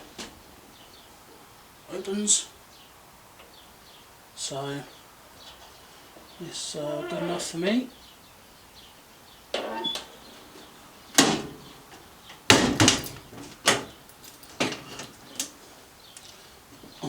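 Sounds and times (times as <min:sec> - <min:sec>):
metal guard door clunking and rattling: 0:09.5 - 0:10.3, 0:11.1 - 0:15.6.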